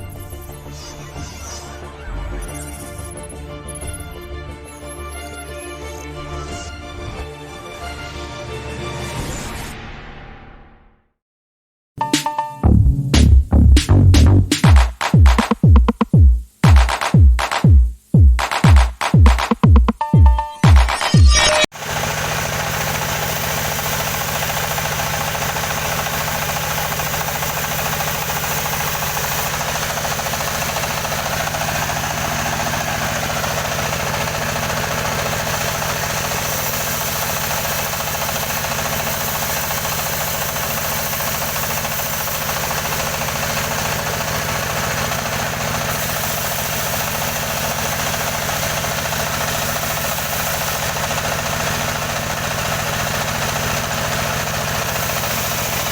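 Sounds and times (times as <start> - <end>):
saw engine running: 12.0 - 55.9.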